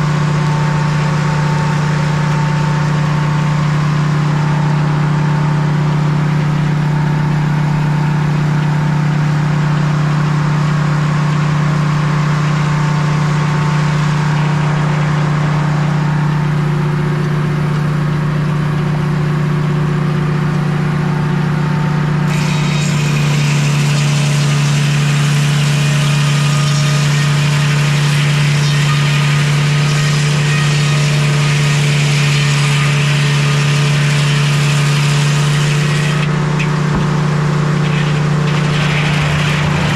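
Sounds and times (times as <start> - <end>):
sawmill engine running: 0.0 - 39.9
hissy blade cutting sound: 22.3 - 31.8.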